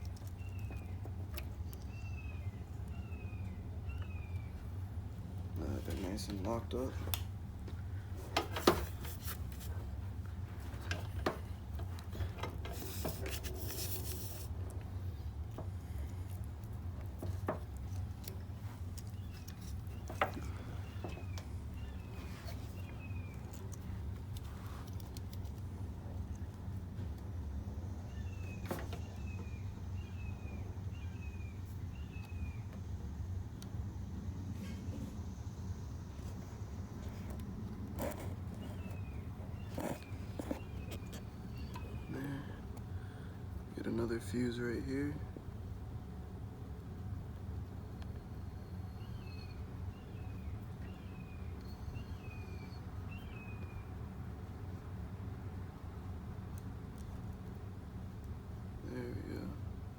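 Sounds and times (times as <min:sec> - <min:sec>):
steady low hum: 0:00.0 - 0:59.9.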